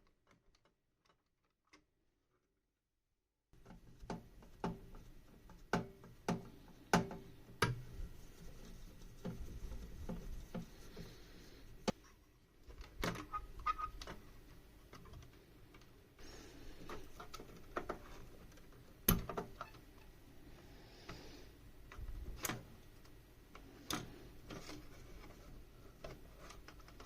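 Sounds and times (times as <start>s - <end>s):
short squeaks: 13.2s - 14.0s.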